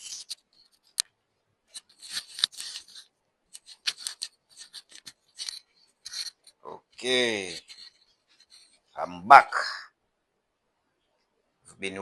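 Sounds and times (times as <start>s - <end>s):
scrubbing metal parts: 1.7s - 8.8s.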